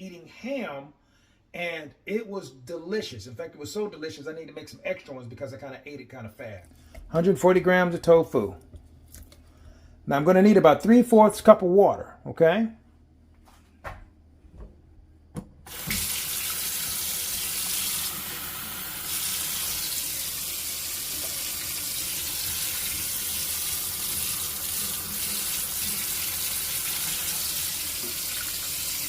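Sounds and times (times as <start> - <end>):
water running from tap: 15.7 - 29.0.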